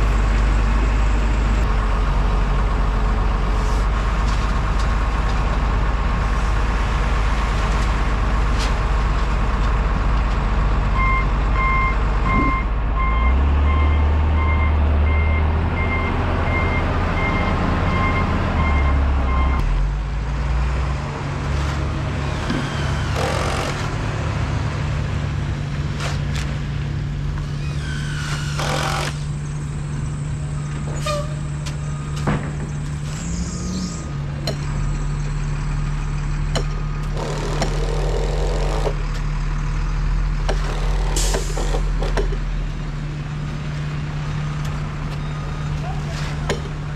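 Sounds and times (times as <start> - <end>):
reversing alarm beeping: 11.0 - 19.6.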